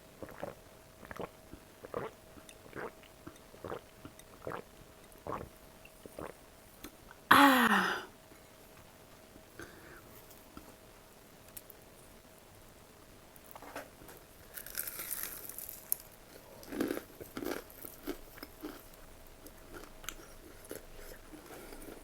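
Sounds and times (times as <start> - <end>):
chewing food: 14.6 - 22.0.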